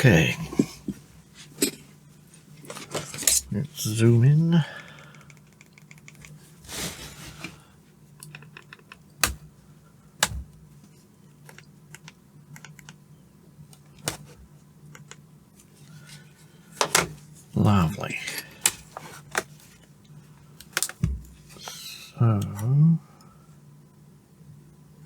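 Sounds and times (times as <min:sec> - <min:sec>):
low steady hum: 0:00.0 - 0:25.0
hands clicking plastic parts: 0:04.8 - 0:06.4, 0:08.2 - 0:09.4, 0:11.5 - 0:13.0.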